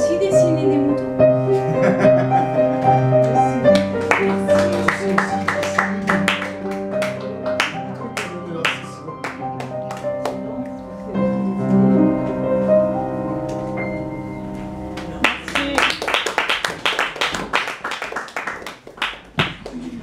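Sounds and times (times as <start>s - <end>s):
piano playing slow chords: 0.0s - 17.3s
audience clapping: 3.2s - 10.9s, 14.9s - 20.0s.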